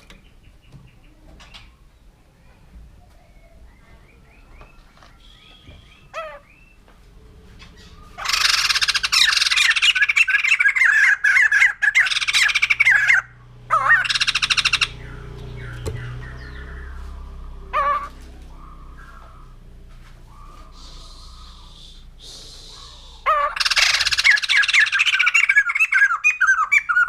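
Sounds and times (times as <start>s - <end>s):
bird chirps: 3.0s - 27.0s
bird harsh rapid chatter: 7.6s - 27.0s.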